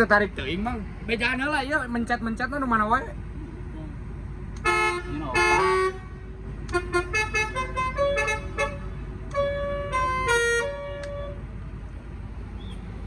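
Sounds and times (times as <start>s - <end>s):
multi-tone air horn toots: 4.6s - 11.4s.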